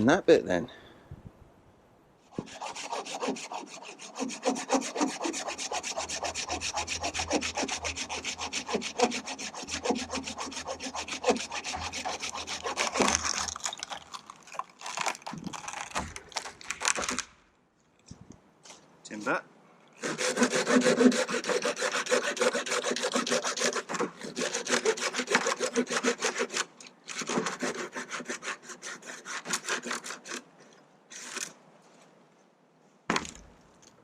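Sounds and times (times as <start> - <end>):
hand saw cutting wood: 2.3 - 14.1, 20.0 - 30.5, 31.1 - 31.5.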